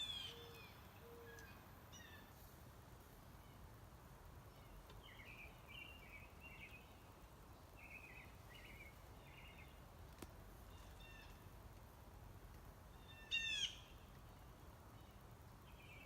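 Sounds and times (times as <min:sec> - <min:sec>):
woodland background hiss: 0:00.0 - 0:16.0
small bird chirping: 0:12.9 - 0:16.0.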